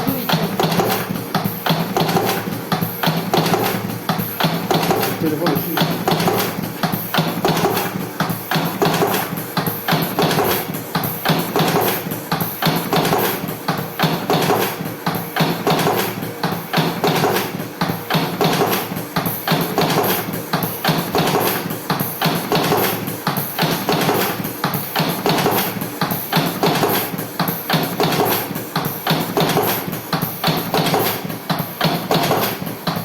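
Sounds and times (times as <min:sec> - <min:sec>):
motor hum: 0:00.0 - 0:01.7.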